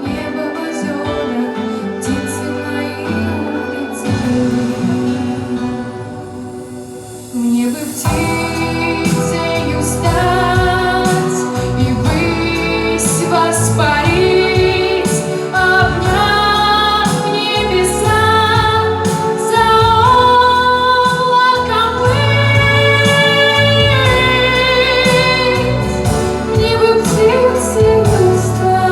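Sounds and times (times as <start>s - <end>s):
instrumental accompaniment: 0.0s - 28.9s.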